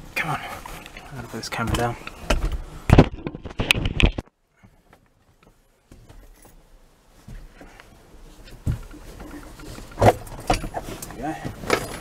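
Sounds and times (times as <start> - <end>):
camera knocks and scrapes: 1.6 - 4.2.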